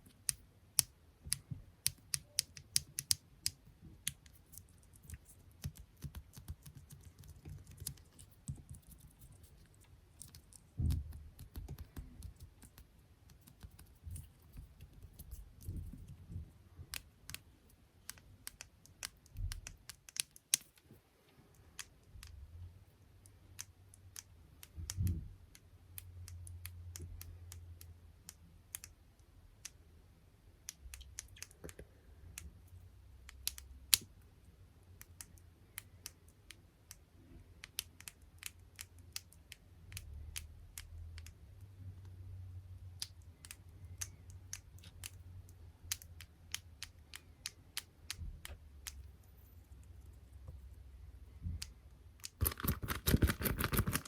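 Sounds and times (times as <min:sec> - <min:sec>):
fingertip tapping on objects: 0:00.1 - 0:17.4.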